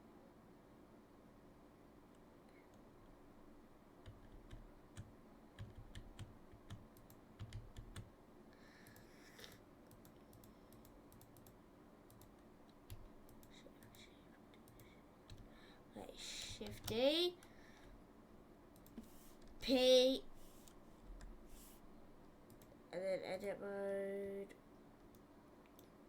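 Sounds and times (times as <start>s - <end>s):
low steady hum: 0.0s - 26.0s
keyboard keystrokes: 4.0s - 8.1s.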